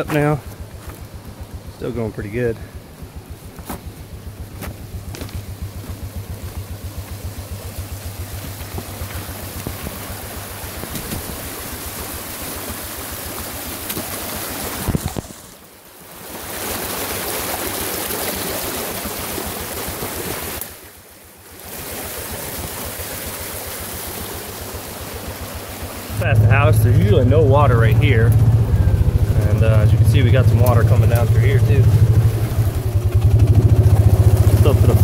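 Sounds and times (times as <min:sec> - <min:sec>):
rushing stream water: 0:00.0 - 0:35.0
small engine running: 0:00.4 - 0:14.2, 0:21.5 - 0:35.0.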